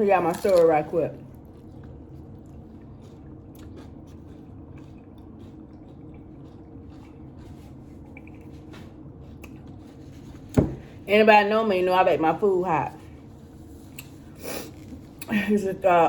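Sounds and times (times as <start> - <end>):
person chewing food: 0.0 - 10.6, 13.0 - 15.3
steady low hum: 0.0 - 16.0.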